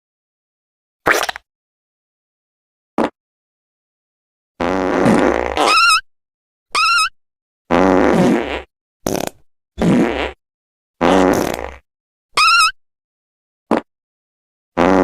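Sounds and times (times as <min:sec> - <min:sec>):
fart sound effects: 0:04.6 - 0:06.0, 0:07.7 - 0:10.4, 0:11.0 - 0:12.7, 0:13.7 - 0:13.9, 0:14.8 - 0:15.0.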